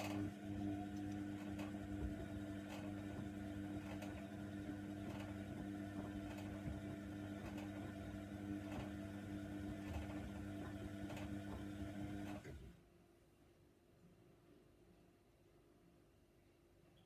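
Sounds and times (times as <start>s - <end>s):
washer dryer humming: 0.0s - 12.8s.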